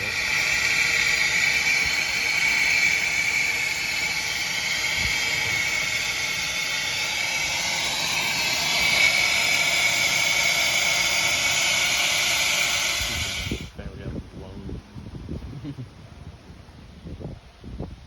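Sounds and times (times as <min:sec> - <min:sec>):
hiss of rushing air: 0:00.0 - 0:13.8.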